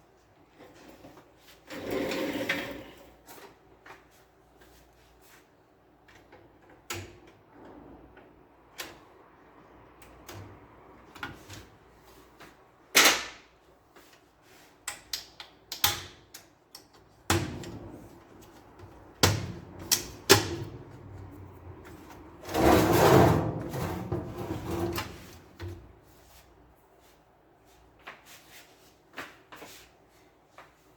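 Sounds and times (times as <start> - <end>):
rough scraping: 21.9 - 25.6.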